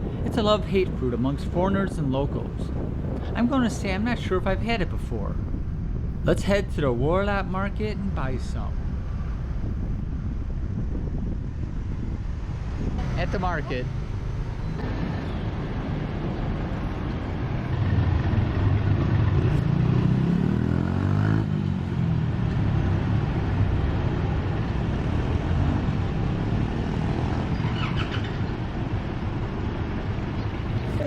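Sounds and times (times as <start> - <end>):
vehicle engine running: 0.0 - 10.0.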